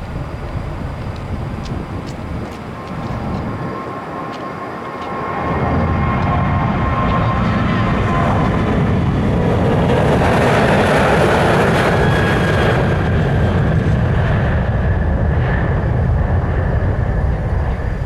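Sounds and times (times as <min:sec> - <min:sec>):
jet engines at takeoff: 0:00.0 - 0:18.0.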